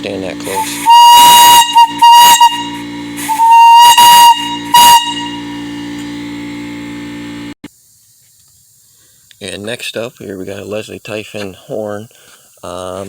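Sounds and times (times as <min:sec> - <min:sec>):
steam whistle blowing: 0:00.4 - 0:06.9
hiss of rushing gas: 0:00.5 - 0:01.1, 0:03.2 - 0:04.2.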